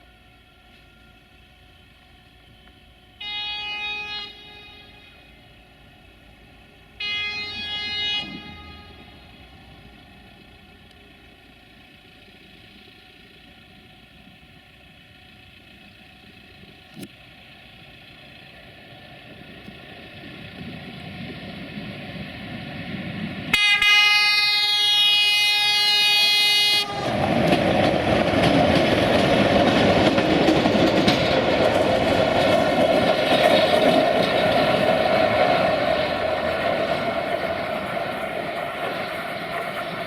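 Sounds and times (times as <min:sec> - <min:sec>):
rail truck engine: 0:00.0 - 0:40.0
rail truck horn blast: 0:03.0 - 0:05.8, 0:06.8 - 0:10.1, 0:23.5 - 0:27.8
wheels on rails: 0:05.4 - 0:23.6, 0:24.5 - 0:40.0.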